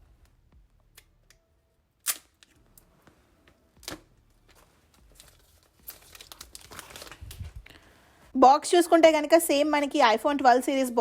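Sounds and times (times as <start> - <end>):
paper tearing and crinkling: 3.8 - 7.7.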